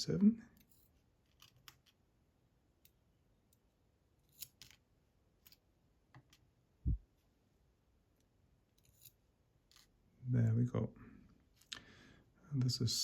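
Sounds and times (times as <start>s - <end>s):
small lock parts clicking: 0.5s - 2.0s, 2.8s - 6.5s, 8.2s - 10.0s.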